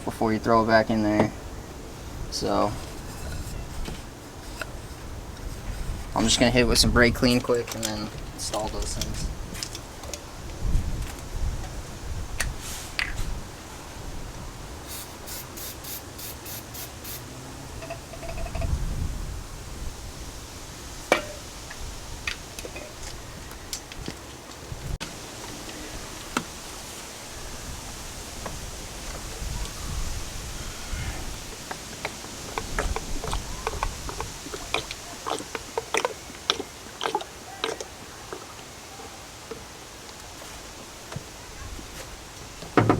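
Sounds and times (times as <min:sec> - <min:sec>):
aerosol spray hissing bursts: 0:14.8 - 0:17.3.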